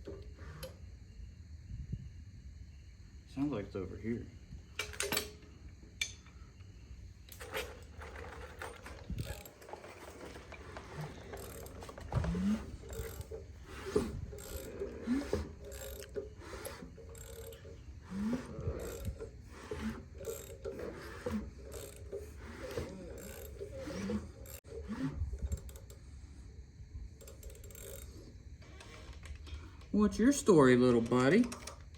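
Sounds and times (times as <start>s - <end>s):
short rising squeaks: 7.4s - 25.4s
ratchet wrench clicking: 10.9s - 24.6s, 27.2s - 28.2s.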